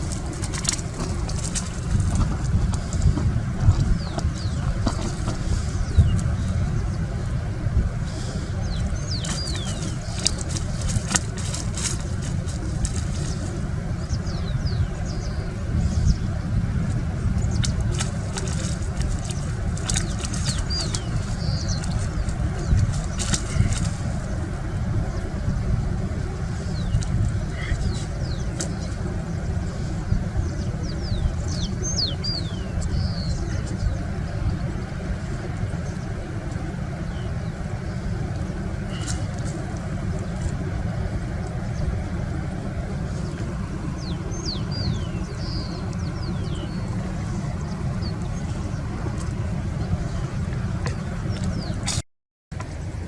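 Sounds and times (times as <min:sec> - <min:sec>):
birds chirping: 0:00.0 - 0:52.0
steady low rumble: 0:00.0 - 0:53.0
birds whistling: 0:08.1 - 0:12.0, 0:17.4 - 0:23.9, 0:26.6 - 0:34.8, 0:43.1 - 0:49.2.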